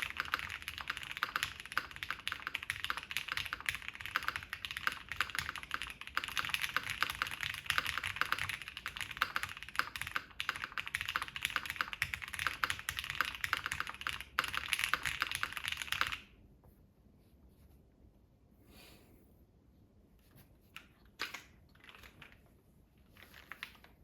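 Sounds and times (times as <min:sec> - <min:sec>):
fast mechanical keyboard typing: 0:00.0 - 0:16.3, 0:21.2 - 0:22.4.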